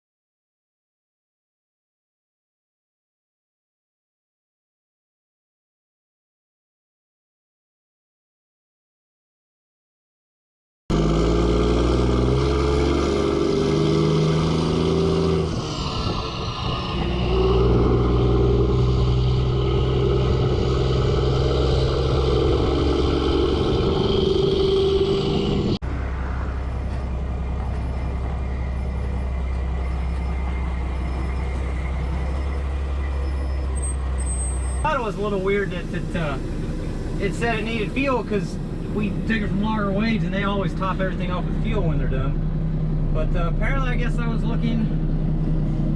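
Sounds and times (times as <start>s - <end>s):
truck diesel engine shifting gear: 17.2s - 45.9s.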